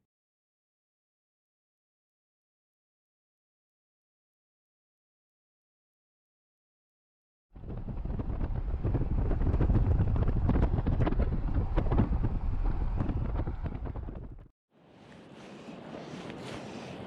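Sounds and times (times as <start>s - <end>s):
wind buffeting microphone: 7.6s - 14.5s.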